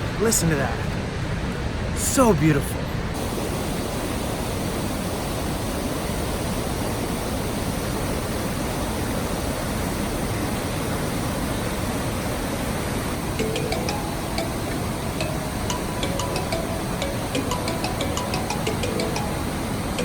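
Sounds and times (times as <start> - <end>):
waterfall rushing: 13.1 - 20.0.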